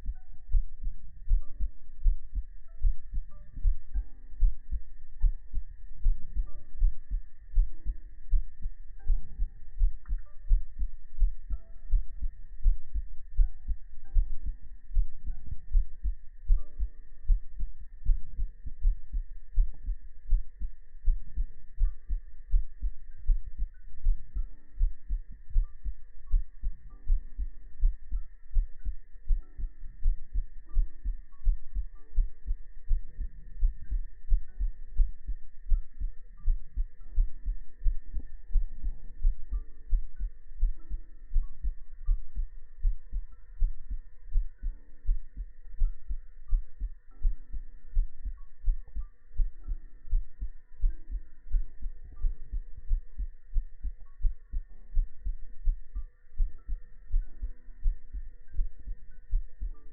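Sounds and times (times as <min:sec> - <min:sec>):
heartbeat thumps: 0:00.0 - 0:59.9.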